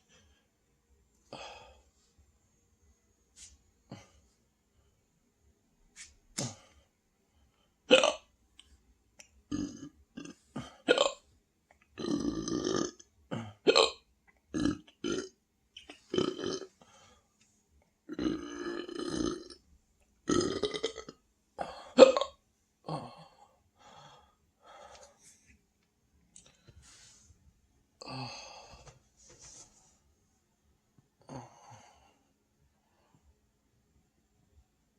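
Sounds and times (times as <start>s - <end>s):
person belching: 7.9s - 8.3s, 9.5s - 11.2s, 12.0s - 16.7s, 18.1s - 19.6s, 20.2s - 23.4s.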